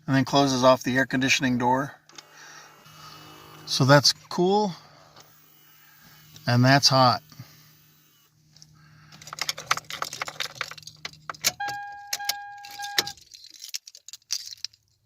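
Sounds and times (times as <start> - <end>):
keys jangling: 9.2 - 15.0
electronic warning beep: 11.6 - 13.1.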